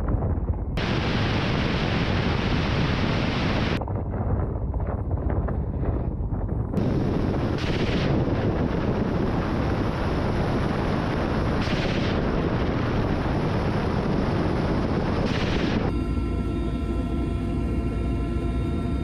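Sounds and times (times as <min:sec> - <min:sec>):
heavy weapons fire: 0:06.8 - 0:15.9.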